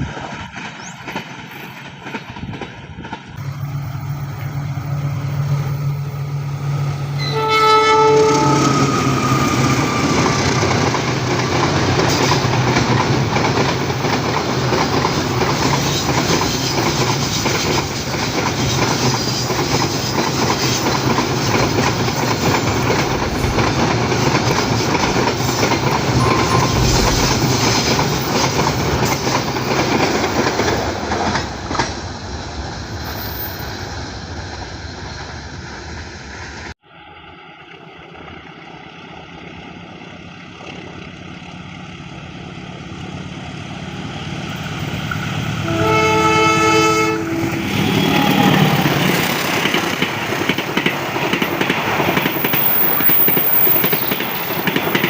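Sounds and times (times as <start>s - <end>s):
train approaching: 0.0s - 55.0s
multi-tone train horn blast: 7.1s - 10.9s, 26.0s - 28.0s, 45.6s - 49.3s
train wheels clattering over rails: 8.7s - 32.2s, 47.6s - 55.0s.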